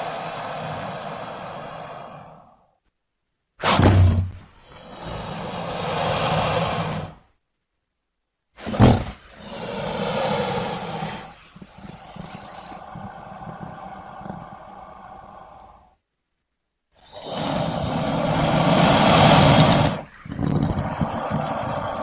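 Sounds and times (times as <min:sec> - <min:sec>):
crocodile growling: 0:03.6 - 0:07.2, 0:08.8 - 0:15.9, 0:17.0 - 0:22.0.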